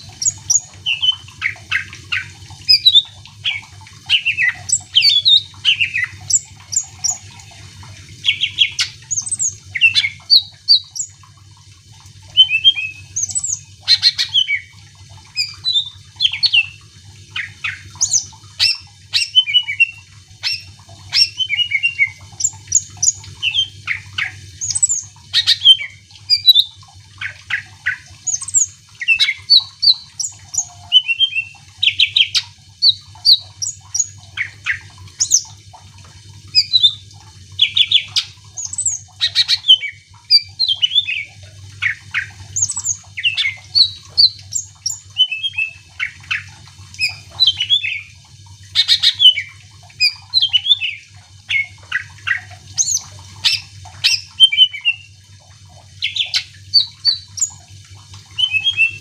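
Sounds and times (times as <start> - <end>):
bird singing whistles and chirps: 0.2 - 7.2, 12.4 - 14.7, 15.4 - 16.8, 17.4 - 26.7, 27.5 - 35.4, 37.6 - 48.1, 48.8 - 55.1, 56.0 - 57.5, 58.4 - 59.0.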